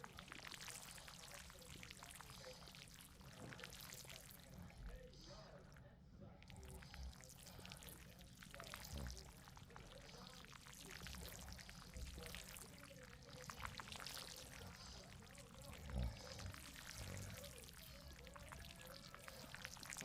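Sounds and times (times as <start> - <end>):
rain pattering: 0.0 - 4.9, 6.6 - 20.0
person snoring: 13.4 - 20.0.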